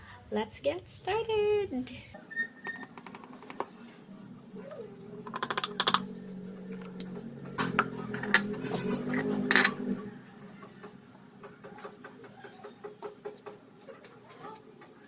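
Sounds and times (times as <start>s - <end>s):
low steady hum: 2.8s - 10.6s
plastic parts clicking and rattling: 5.3s - 6.1s.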